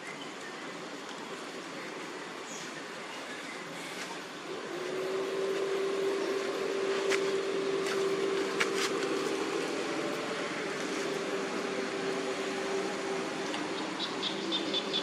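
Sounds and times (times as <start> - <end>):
steady mechanical hum: 0.0 - 15.0.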